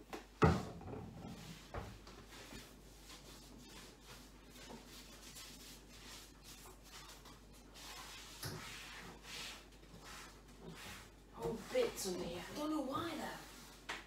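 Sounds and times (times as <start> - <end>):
cloth wiping a worktop: 1.1 - 14.0.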